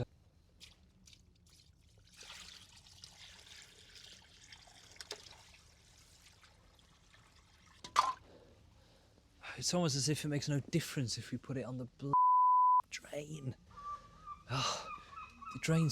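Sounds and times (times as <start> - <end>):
water trickling into a drain: 0.5 - 8.3.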